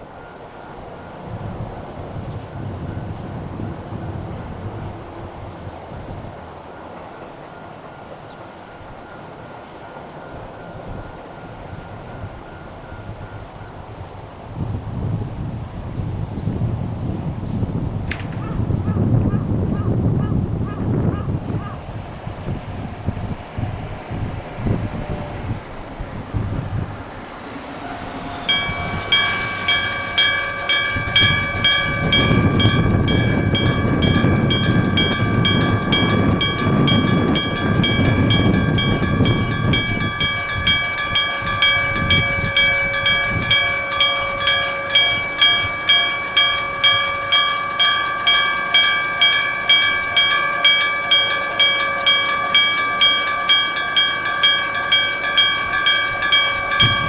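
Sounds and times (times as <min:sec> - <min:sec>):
train rumbling past: 0:00.0 - 0:57.0
level crossing bell clanging: 0:27.3 - 0:57.0.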